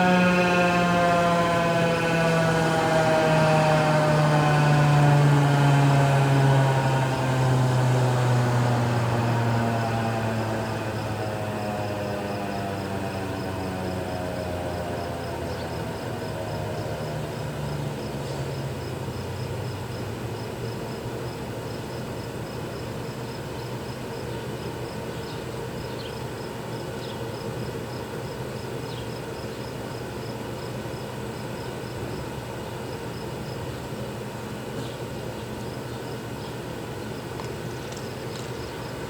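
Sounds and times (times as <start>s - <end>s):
warning siren winding down: 0.0s - 20.4s
outdoor background noise: 0.0s - 39.0s
insect chirping: 9.1s - 33.8s, 34.8s - 39.0s.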